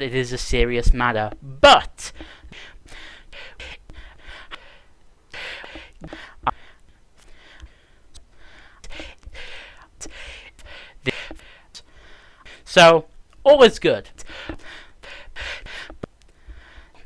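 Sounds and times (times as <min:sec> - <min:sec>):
man breathing heavily: 0:02.0 - 0:12.7, 0:14.2 - 0:17.0.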